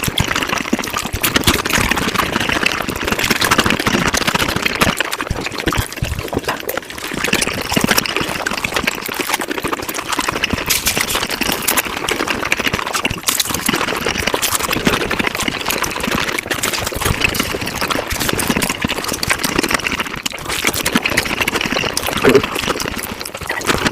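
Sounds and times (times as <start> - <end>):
sped-up chewing mouth noises: 0.0 - 23.9.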